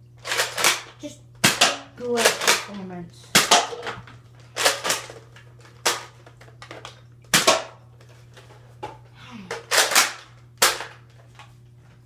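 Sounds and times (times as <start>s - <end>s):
dart blaster plastic snaps: 0.2s - 2.7s, 6.7s - 7.7s, 9.5s - 11.0s.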